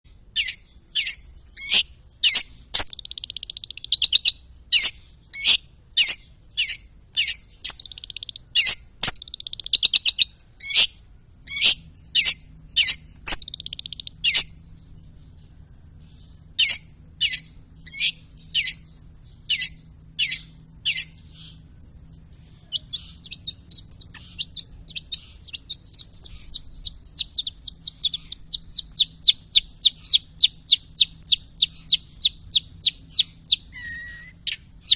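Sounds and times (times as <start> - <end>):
bird chattering notes: 0.4 - 10.9, 22.3 - 34.9
shrike singing: 16.6 - 34.9.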